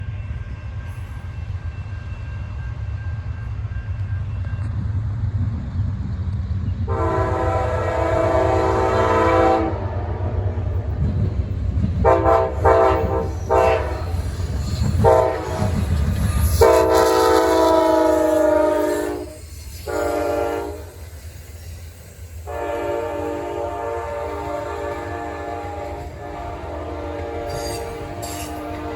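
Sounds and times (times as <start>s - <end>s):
low rumble of passing train: 0.0s - 28.9s
locomotive air horn blasts: 6.9s - 10.3s, 12.0s - 14.2s, 15.0s - 15.8s, 16.4s - 21.0s, 22.4s - 28.9s.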